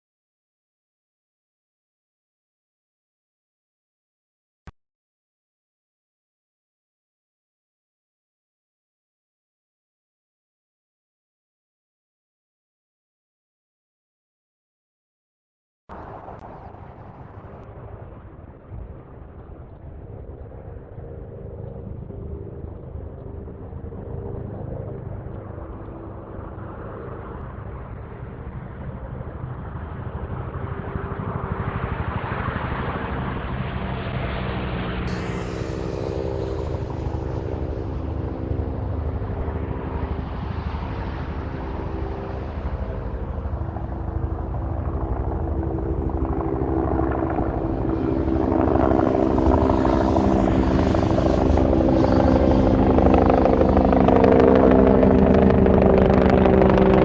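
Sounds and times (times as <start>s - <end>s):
helicopter rotor and engine: 16.0s - 57.0s.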